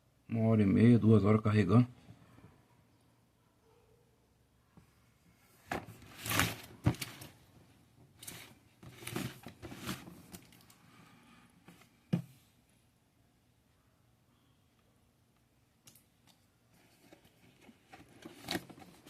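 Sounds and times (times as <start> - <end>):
objects being handled: 5.5 - 10.8, 15.8 - 19.0.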